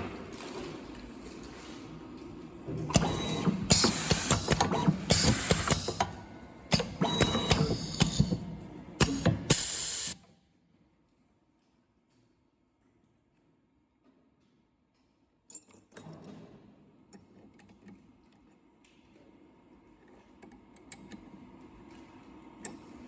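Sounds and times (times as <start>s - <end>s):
soldering machine clicks and clacks: 2.8s - 10.2s
loud bursts of hiss: 3.0s - 6.1s, 9.0s - 10.2s.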